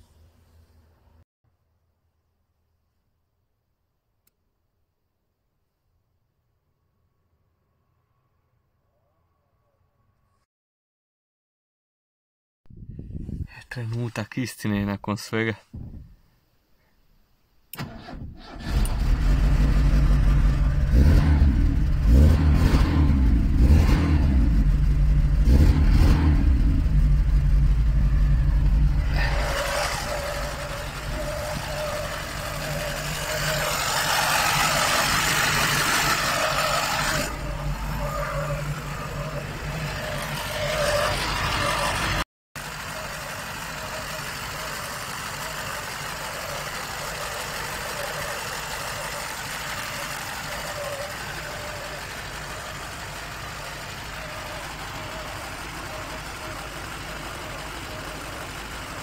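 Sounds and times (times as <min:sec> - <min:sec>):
car engine starting and idling: 0:17.7 - 0:59.0.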